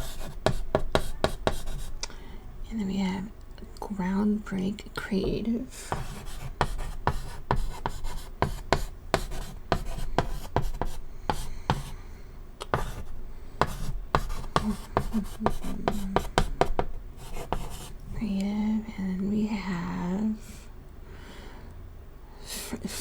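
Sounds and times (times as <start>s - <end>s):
chalk writing on a chalkboard: 0.0s - 2.0s, 5.9s - 12.0s, 12.6s - 18.0s.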